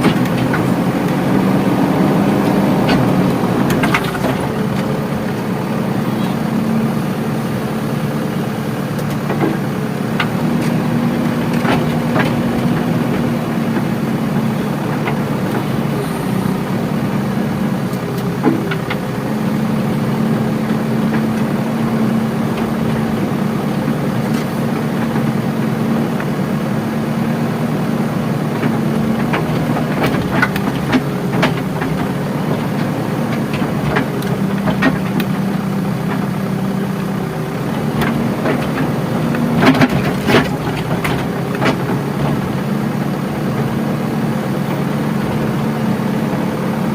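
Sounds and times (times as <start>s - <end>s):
knocks and clanks: 0.0s - 5.4s, 28.6s - 35.4s
diesel engine running: 0.0s - 46.9s.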